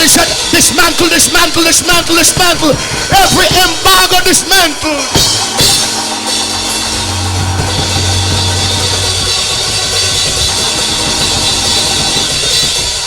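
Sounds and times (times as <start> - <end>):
drum kit playing: 0.0 - 13.0
cymbal wash: 4.6 - 13.0
cymbal crash: 4.7 - 13.0
held low bass note: 5.4 - 12.5.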